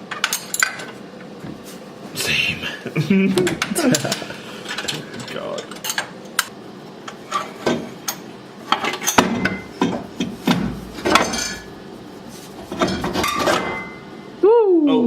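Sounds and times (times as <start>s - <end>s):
metal clanking and scraping: 7.2s - 14.1s.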